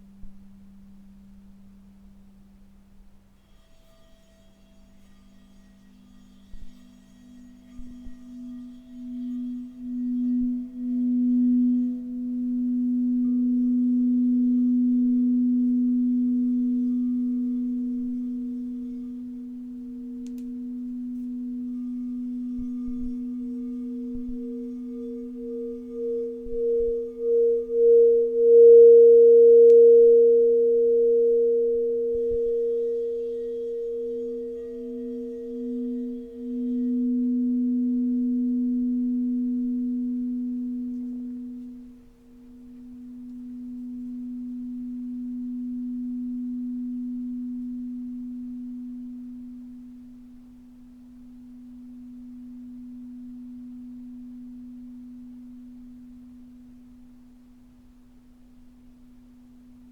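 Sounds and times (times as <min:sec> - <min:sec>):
low pure tone: 0:00.0 - 0:59.9
higher pure tone: 0:07.8 - 0:57.1.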